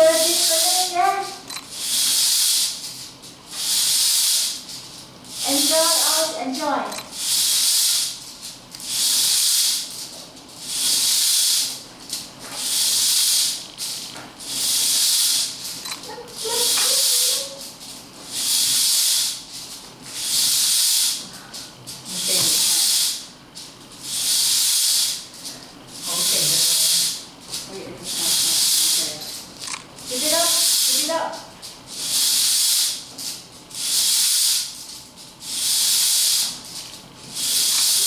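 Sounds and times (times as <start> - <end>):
high-pitched hissing swishes: 0.0 - 2.8, 26.0 - 27.2, 28.0 - 29.3, 30.1 - 31.2.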